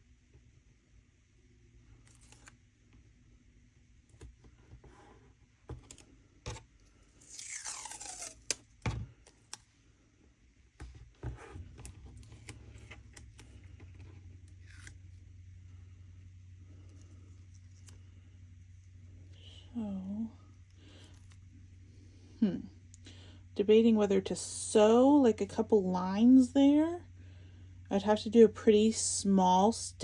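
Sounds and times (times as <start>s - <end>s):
low steady hum: 0.0s - 30.0s
tape tearing off roll: 7.2s - 8.7s.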